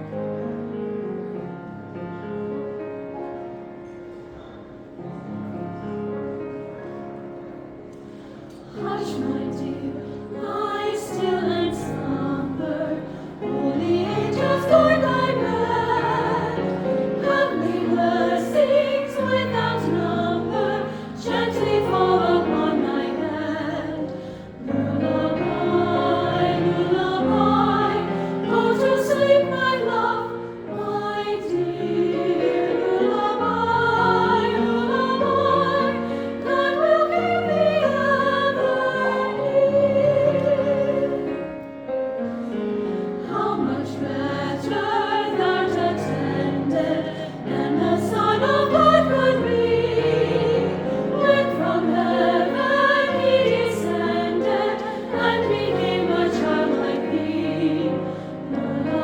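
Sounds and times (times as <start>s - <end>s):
singers breathing: 8.0s - 8.7s, 24.2s - 24.6s
choir singing in parts: 8.5s - 41.7s, 42.5s - 59.0s.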